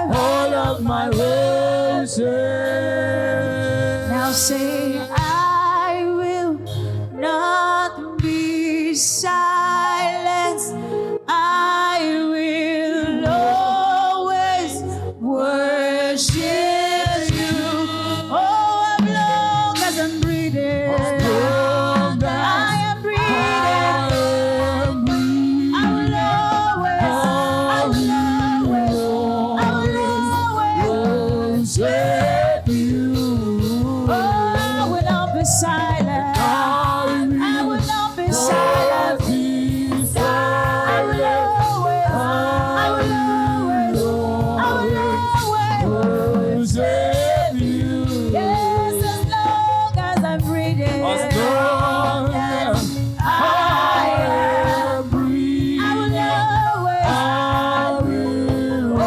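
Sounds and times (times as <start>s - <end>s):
instrumental backing with steady beat: 0.0s - 8.7s, 16.2s - 59.0s
choir singing gospel song: 0.0s - 59.0s.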